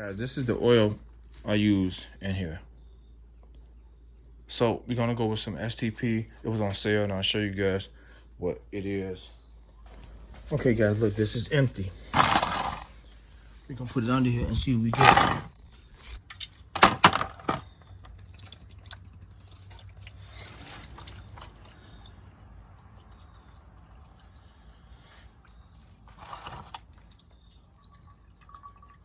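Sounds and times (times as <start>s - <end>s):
oil trickling into a drain pan: 16.3s - 29.0s.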